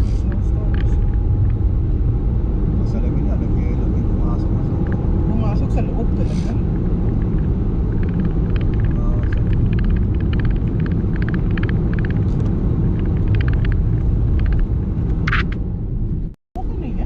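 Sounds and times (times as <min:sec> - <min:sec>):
tyre and engine rumble: 0:00.0 - 0:17.0.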